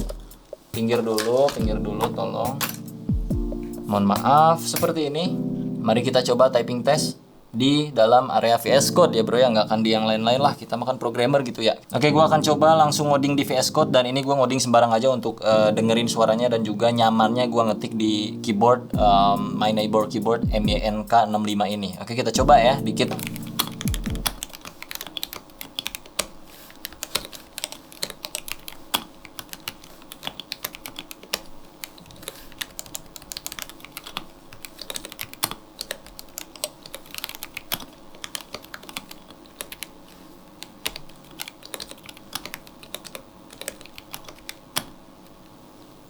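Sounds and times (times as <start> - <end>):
mechanical keyboard typing: 19.2 - 45.0.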